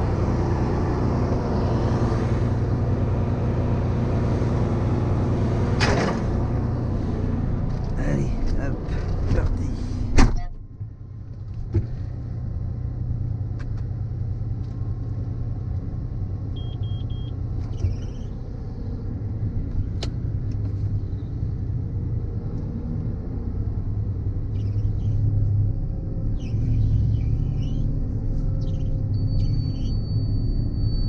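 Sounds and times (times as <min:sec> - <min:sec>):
diesel engine rumble: 0:00.0 - 0:31.0
short beeps: 0:16.6 - 0:17.3, 0:29.1 - 0:31.0.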